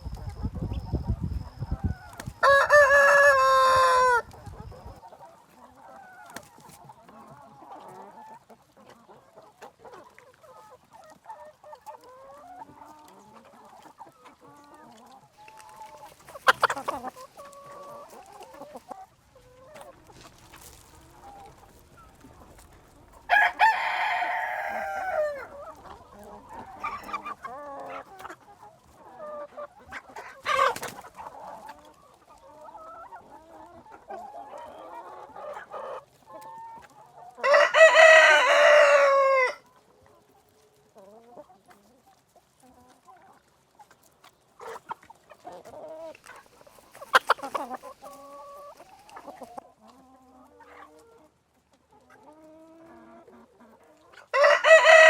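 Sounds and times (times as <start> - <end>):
chicken clucking: 0.0 - 55.0
rooster crowing: 2.4 - 4.3, 23.3 - 25.5, 37.4 - 39.6, 54.3 - 55.0.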